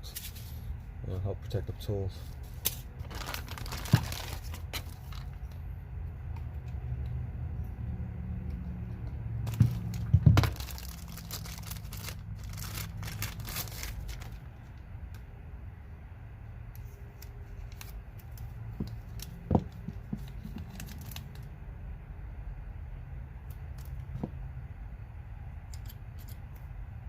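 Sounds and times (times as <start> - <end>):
steady low hum: 0.0 - 27.0
packaging crinkling and rustling: 2.4 - 5.4, 9.4 - 14.5, 17.6 - 21.4.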